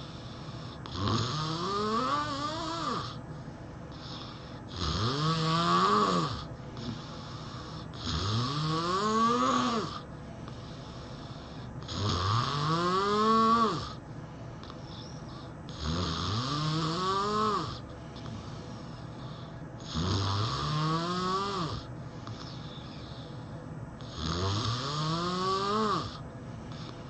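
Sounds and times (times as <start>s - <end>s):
person snoring heavily: 0.0s - 3.2s, 4.0s - 10.1s, 10.8s - 14.0s, 15.7s - 17.8s, 19.2s - 23.2s, 24.0s - 27.0s
quiet breaths: 0.0s - 27.0s.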